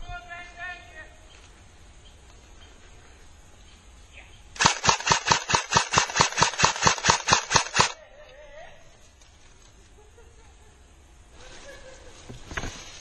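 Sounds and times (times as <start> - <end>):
airsoft gun firing rapidly: 4.6 - 8.0.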